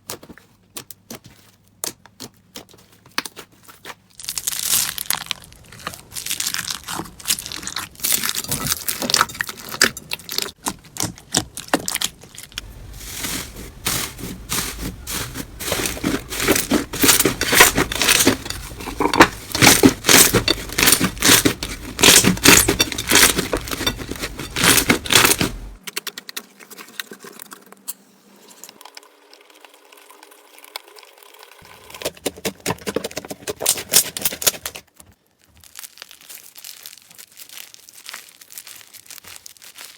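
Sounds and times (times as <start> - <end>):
slime crackling and popping: 4.2 - 12.7, 35.3 - 39.9.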